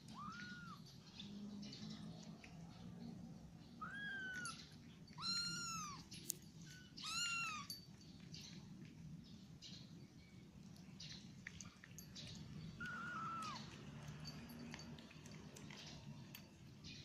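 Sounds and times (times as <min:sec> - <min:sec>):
cat meowing: 0:00.0 - 0:00.8, 0:03.8 - 0:04.6, 0:05.2 - 0:06.1, 0:07.0 - 0:07.8, 0:12.8 - 0:13.7.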